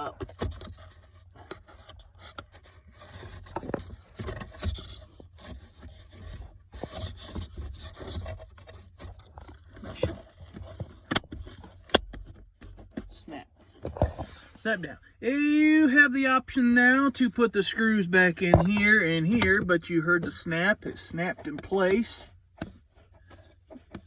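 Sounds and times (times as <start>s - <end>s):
plastic scraping and rubbing: 0.0s - 14.8s, 18.2s - 24.0s
knocks and clicks: 18.4s - 19.8s.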